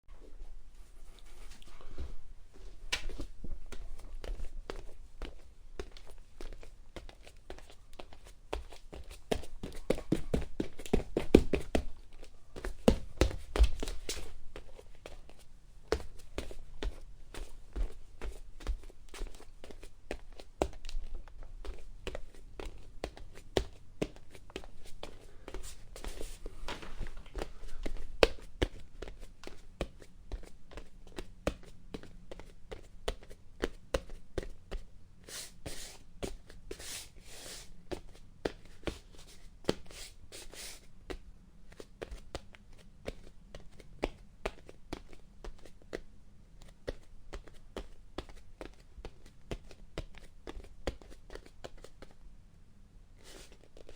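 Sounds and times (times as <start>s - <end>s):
bare feet on wooden floor: 21.7s - 29.2s.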